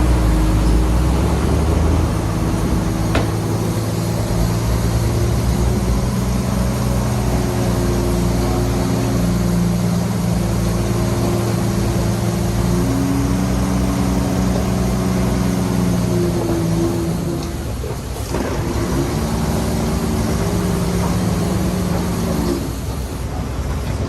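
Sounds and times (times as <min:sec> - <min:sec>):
heavy diesel engine under load: 0:00.0 - 0:24.0.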